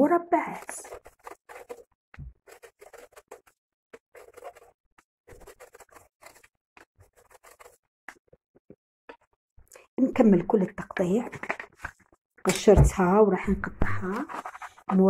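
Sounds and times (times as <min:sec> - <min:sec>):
kitchen knife scraping eggplant: 0:00.4 - 0:07.8, 0:14.0 - 0:15.0.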